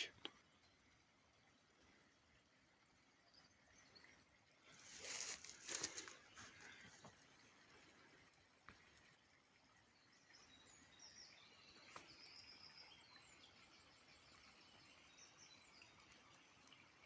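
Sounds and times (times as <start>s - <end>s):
small birds chirping: 3.2s - 7.1s.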